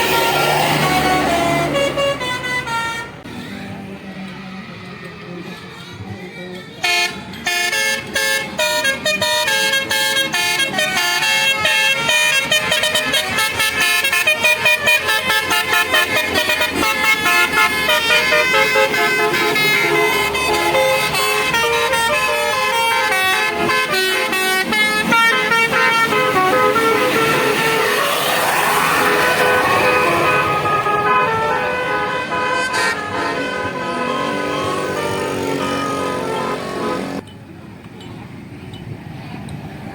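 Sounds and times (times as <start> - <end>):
multi-tone bus horn melody: 0.0 - 3.8, 6.4 - 37.2.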